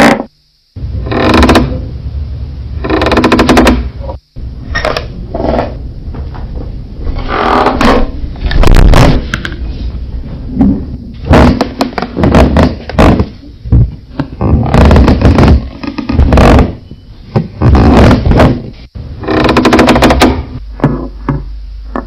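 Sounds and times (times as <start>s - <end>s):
wooden floorboards creaking: 1.0s - 1.8s, 2.8s - 4.2s, 7.1s - 9.3s, 10.5s - 22.0s.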